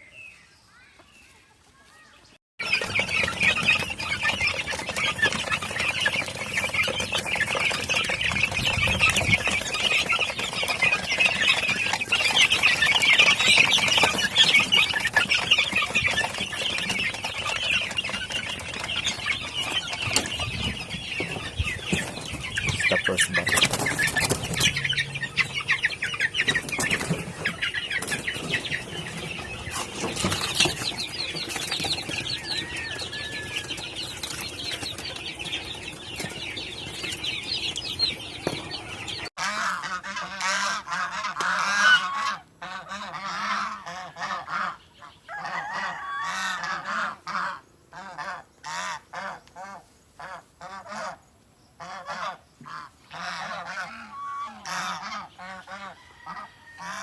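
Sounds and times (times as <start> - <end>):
poultry chirping and clucking: 0.0 - 57.0.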